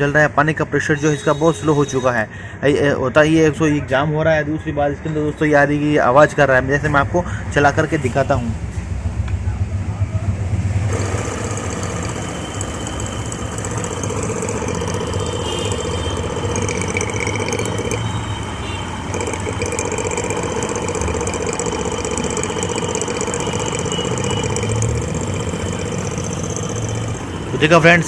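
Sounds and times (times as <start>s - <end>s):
pump motor humming and whining: 10.6s - 28.0s.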